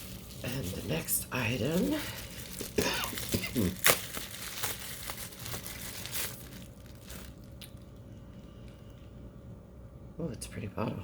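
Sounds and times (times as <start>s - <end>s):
packaging crinkling and rustling: 0.0s - 8.0s.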